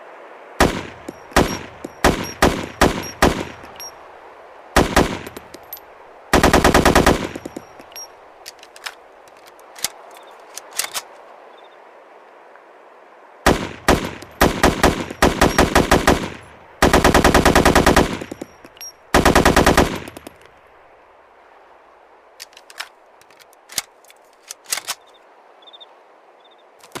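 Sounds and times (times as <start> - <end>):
sharp gunshot cracks: 0.6 - 3.8, 13.5 - 18.5
automatic rifle bursts: 0.6 - 3.9, 6.3 - 11.1, 13.5 - 20.4.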